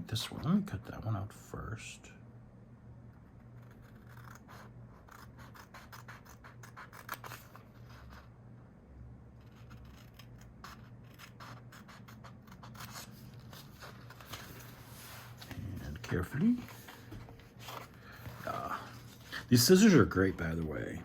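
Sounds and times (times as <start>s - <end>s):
scissors snipping paper: 3.7s - 7.6s.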